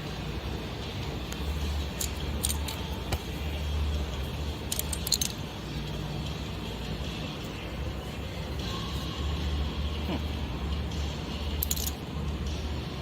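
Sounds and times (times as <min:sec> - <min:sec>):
steady low hum: 0:00.0 - 0:13.0
metal parts clinking: 0:01.7 - 0:03.0, 0:04.6 - 0:05.6, 0:11.5 - 0:12.0.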